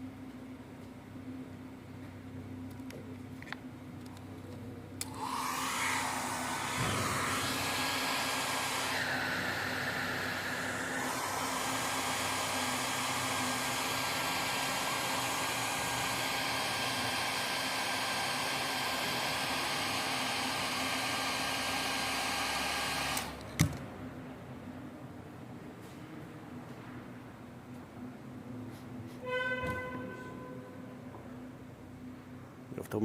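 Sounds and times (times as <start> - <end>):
hot-air blower running: 5.0 - 23.8.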